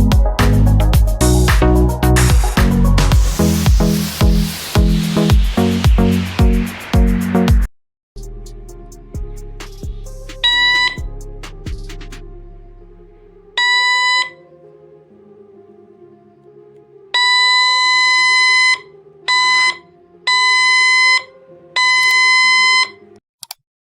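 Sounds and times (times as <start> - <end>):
high electronic doorbell beep: 10.6 - 11.0, 13.6 - 14.4, 17.2 - 23.0.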